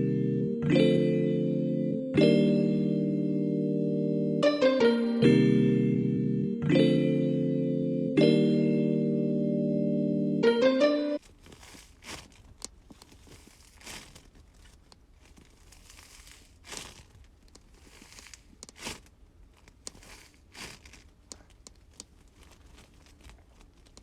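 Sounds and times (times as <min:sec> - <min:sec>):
keyboard notes: 0:00.0 - 0:11.2
slime squeezed and stretched: 0:11.3 - 0:24.0.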